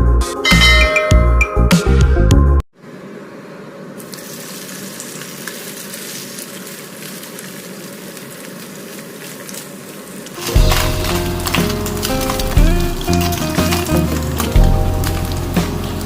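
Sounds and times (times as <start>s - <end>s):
food sizzling in hot oil: 4.0s - 16.0s
burst of music: 10.4s - 16.0s.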